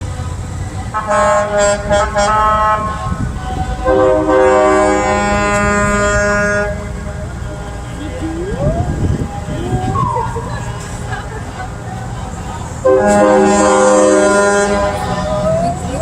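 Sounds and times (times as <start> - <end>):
vehicle air horn blasts: 0.9 - 7.0, 12.8 - 15.6.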